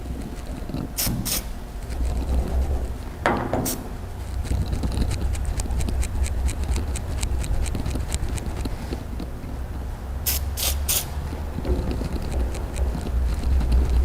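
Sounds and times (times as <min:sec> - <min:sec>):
steady low hum: 0:00.0 - 0:14.0
spray can spraying: 0:01.0 - 0:01.5, 0:10.3 - 0:11.2.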